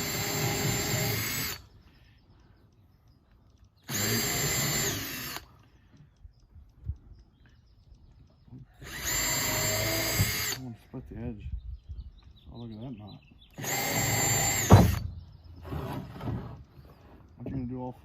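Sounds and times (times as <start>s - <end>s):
power drill whining into wood: 0.0s - 1.8s, 3.8s - 5.6s, 8.8s - 10.6s, 13.6s - 16.9s.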